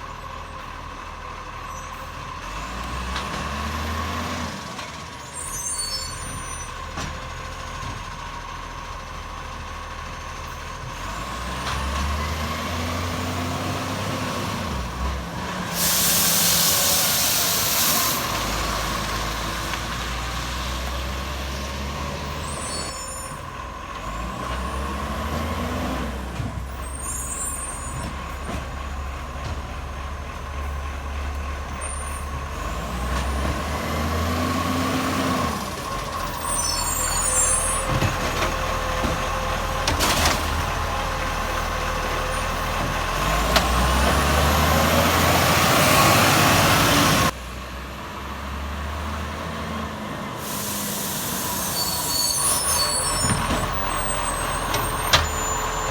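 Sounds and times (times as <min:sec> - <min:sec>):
garbage truck engine running: 0:00.0 - 0:55.9
air brake hisses: 0:15.7 - 0:18.4, 0:50.4 - 0:53.4.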